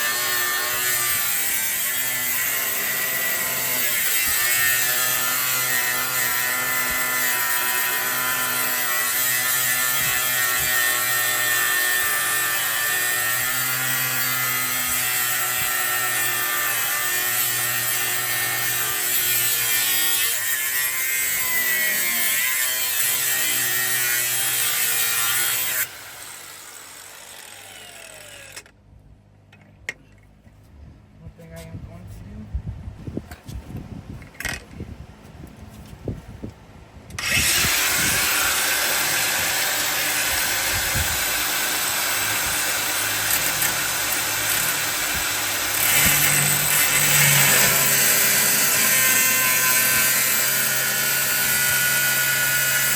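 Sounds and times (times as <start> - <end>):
power tool cutting steel: 0.0 - 28.7, 37.2 - 52.9
power tool spinning down: 21.4 - 28.7, 37.2 - 52.9.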